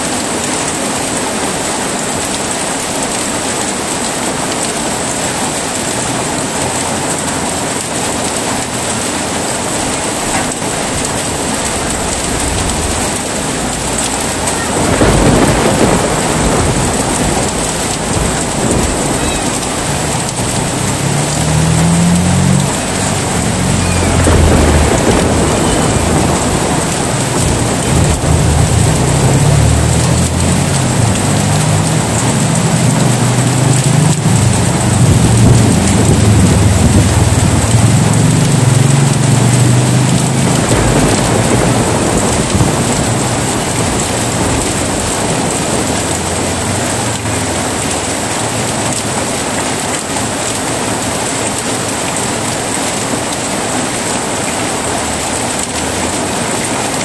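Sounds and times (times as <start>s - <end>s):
heavy rain falling: 0.0s - 57.0s
thunder rumbling: 4.8s - 57.0s.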